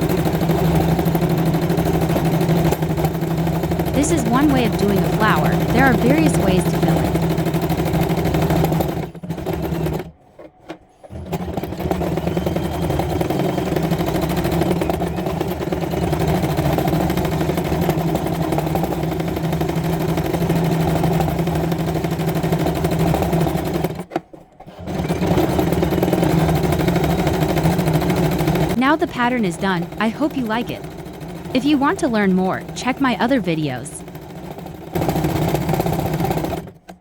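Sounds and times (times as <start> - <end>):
sewing machine stitching: 6.7 - 28.8, 34.0 - 37.0.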